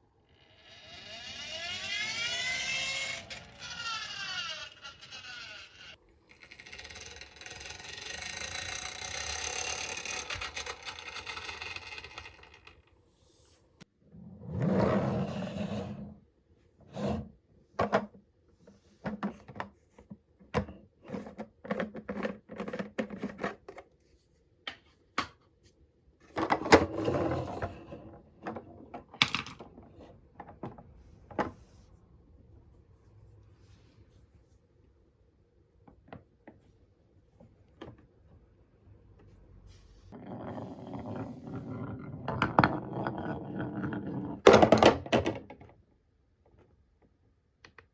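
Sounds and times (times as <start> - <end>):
marbles rolling rumble: 0.5 - 13.0, 40.2 - 44.5.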